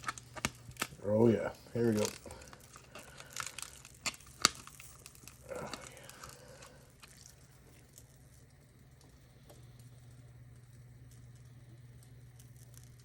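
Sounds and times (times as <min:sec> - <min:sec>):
plastic tearing crackle: 0:00.0 - 0:09.9, 0:10.5 - 0:13.0
low steady hum: 0:00.0 - 0:13.0
plastic snapping: 0:02.0 - 0:07.2.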